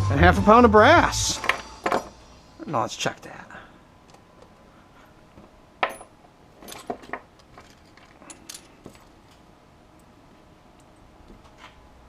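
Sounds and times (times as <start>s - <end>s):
brass scrap pieces clinking: 1.4s - 2.3s.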